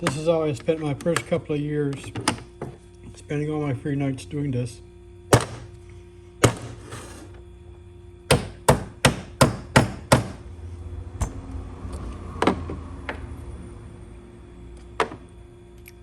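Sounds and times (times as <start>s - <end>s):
mallet striking metal die: 5.4s - 5.7s, 8.3s - 10.4s.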